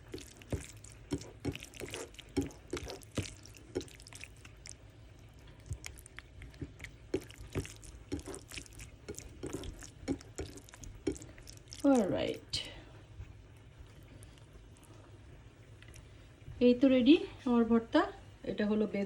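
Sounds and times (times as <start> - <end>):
wet squelches of food mashing: 0.0 - 16.6.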